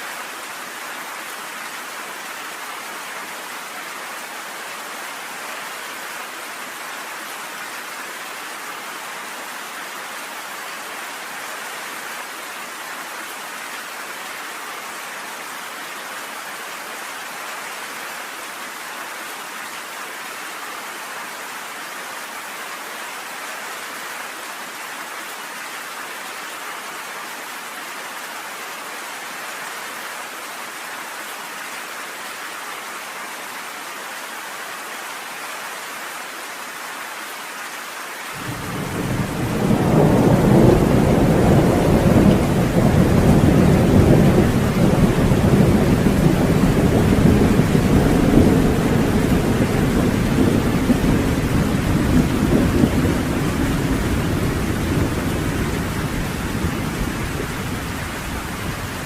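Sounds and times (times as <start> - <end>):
rain pattering on a porch: 27.0 - 59.0.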